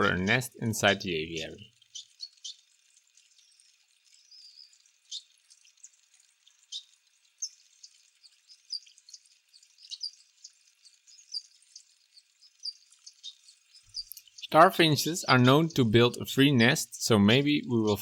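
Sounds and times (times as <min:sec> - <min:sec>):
finches chirping: 0:00.0 - 0:18.0.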